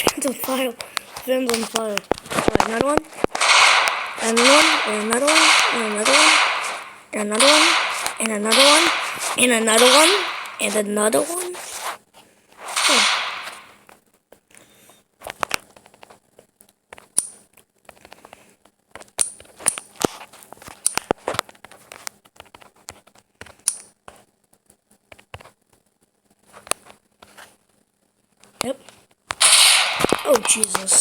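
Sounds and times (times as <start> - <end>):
firecrackers popping and crackling: 0.0 - 11.9, 12.6 - 13.8, 29.3 - 31.0
loud hissing burst: 12.7 - 13.8.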